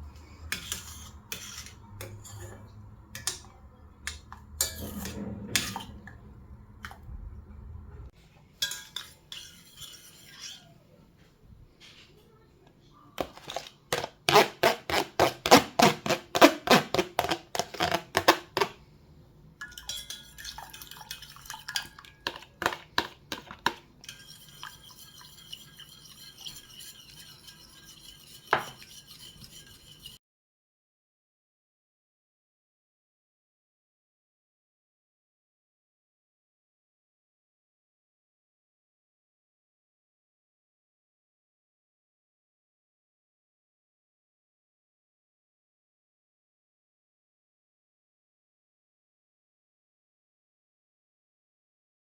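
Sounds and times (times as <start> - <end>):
whisking in a bowl: 0.5 - 3.5, 8.6 - 10.7, 19.6 - 30.2
utensil clinking against dishes: 0.6 - 6.2, 8.6 - 10.7, 19.6 - 30.2.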